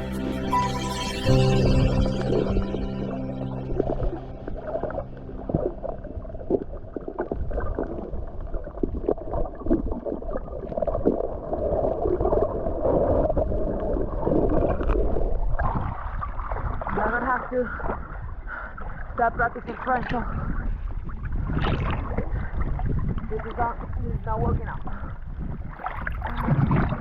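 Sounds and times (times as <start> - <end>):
underwater water rushing: 0.0 - 16.9.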